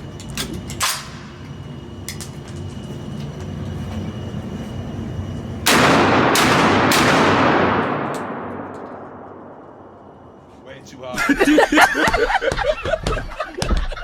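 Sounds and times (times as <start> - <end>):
echoing gunshots: 5.6 - 9.6.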